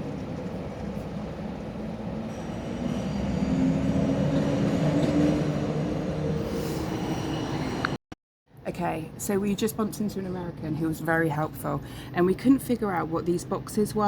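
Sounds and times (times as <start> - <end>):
train rumbling past: 0.0 - 8.0.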